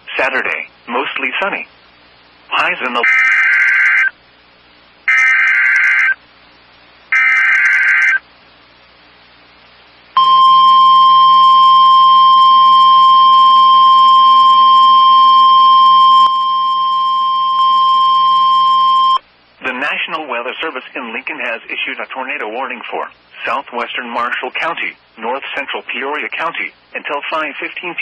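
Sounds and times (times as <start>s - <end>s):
steady warning alarm tone: 10.2s - 19.2s.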